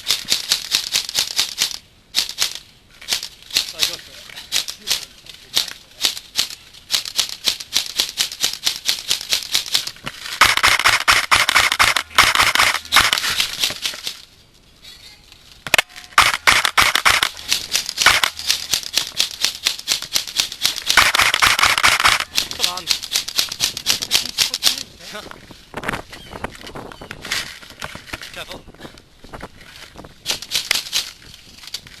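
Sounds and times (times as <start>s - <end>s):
airsoft guns firing: 10.4s - 13.9s, 15.7s - 24.8s.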